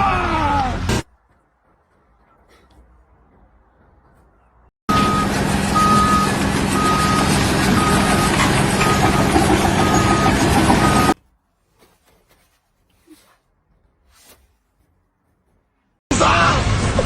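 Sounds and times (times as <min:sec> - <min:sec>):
heavy vehicle engine running: 0:04.9 - 0:11.2
reversing alarm beeping: 0:04.9 - 0:11.2.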